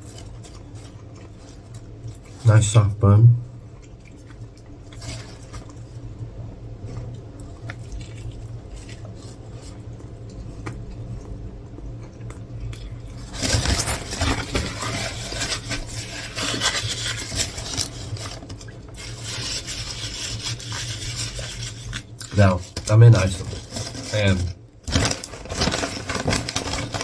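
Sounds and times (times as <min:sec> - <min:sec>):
loud crackling and scraping: 0:13.2 - 0:27.0.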